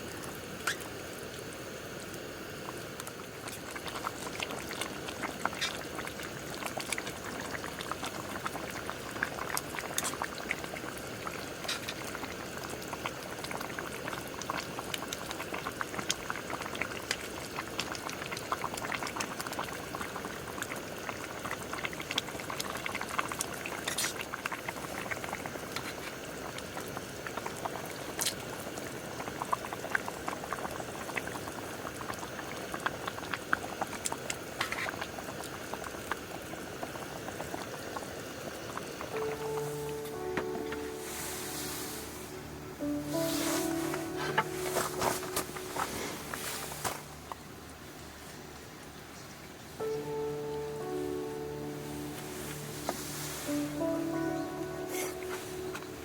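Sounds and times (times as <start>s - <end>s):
liquid bubbling at a boil: 0.0s - 50.8s
sharp crackle: 39.1s - 47.5s.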